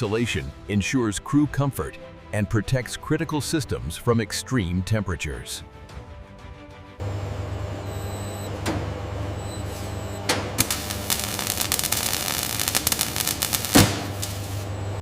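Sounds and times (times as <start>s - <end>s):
machinery humming: 7.0s - 15.0s.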